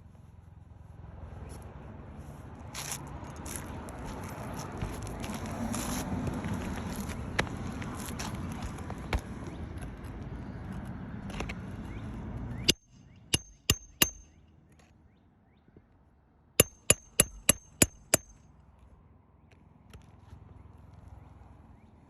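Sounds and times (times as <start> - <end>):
hammer striking nails: 12.7 - 14.4, 16.6 - 18.4.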